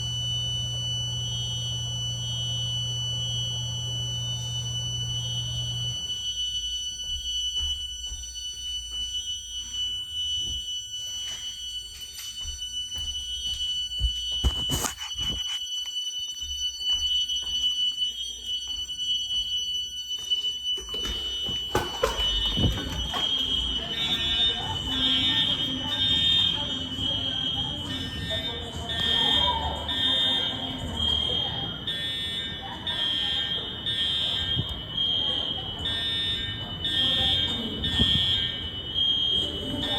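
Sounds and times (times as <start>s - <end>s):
fire alarm high-pitched tone: 0.0s - 39.9s
crowd voices: 21.8s - 39.9s.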